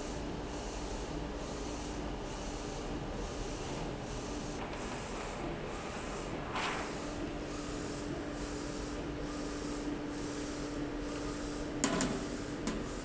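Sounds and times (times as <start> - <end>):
steady machine hum: 0.0 - 13.0
printer carriage sweeping: 4.6 - 8.9, 11.2 - 13.0.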